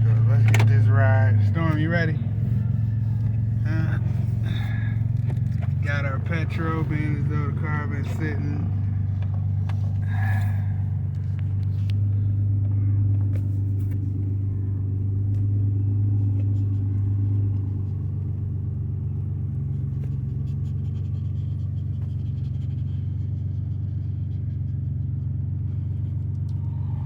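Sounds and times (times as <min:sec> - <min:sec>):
car engine and road rumble: 0:00.0 - 0:27.0.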